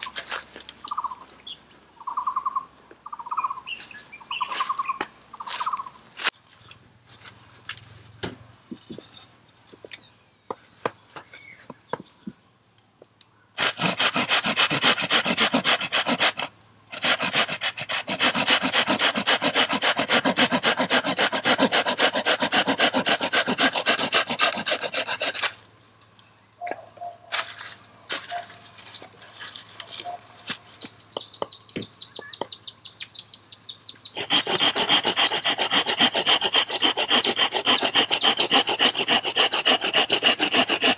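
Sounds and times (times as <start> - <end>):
rapid rasping scraping strokes: 13.6 - 25.6, 34.2 - 40.9.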